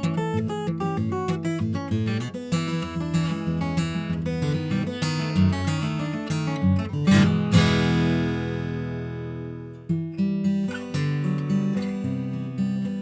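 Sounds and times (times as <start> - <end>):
acoustic guitar playing: 0.0 - 13.0.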